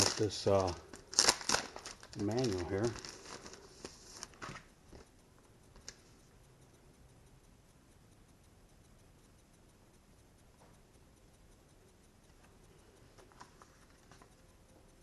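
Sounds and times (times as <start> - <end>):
paper manual rustling: 0.0 - 5.0
faint regular ticking: 0.0 - 15.0.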